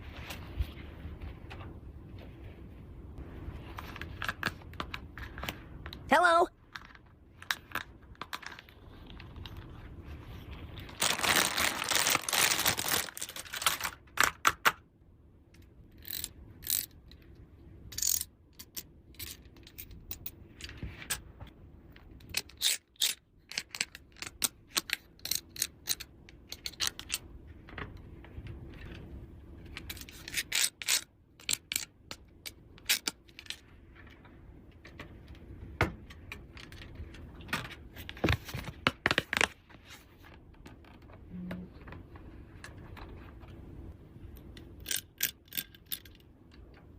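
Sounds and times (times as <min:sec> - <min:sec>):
packaging rustling: 0:10.8 - 0:14.4
plastic toy pieces clicking: 0:17.9 - 0:20.3, 0:22.2 - 0:27.2, 0:29.8 - 0:33.5, 0:44.8 - 0:46.2.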